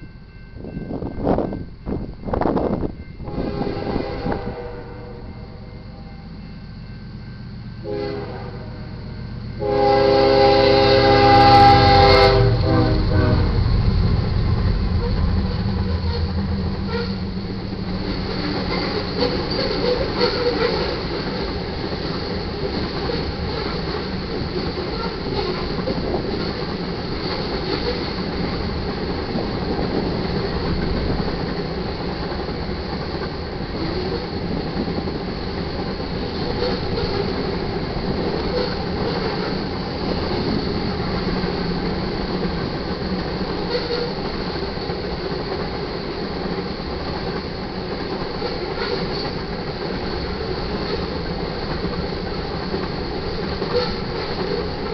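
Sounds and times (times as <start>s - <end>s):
freight cars rolling on rails: 9.4s - 54.9s
high wheel squeal: 14.9s - 17.3s, 18.4s - 21.0s.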